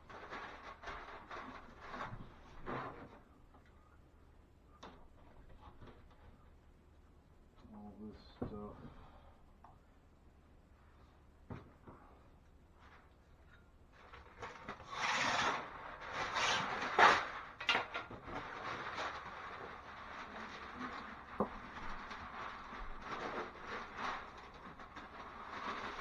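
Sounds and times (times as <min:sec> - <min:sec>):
plastic and paper rustling: 0:00.0 - 0:03.9, 0:12.7 - 0:26.0.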